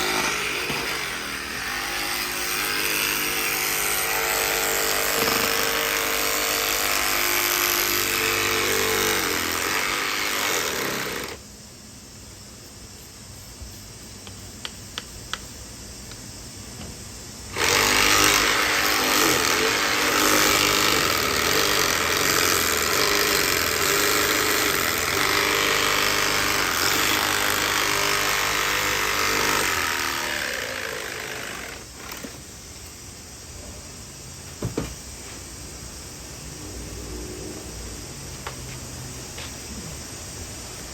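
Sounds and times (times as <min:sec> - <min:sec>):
power tool rattling and hammering: 0:00.0 - 0:11.4, 0:17.5 - 0:32.5.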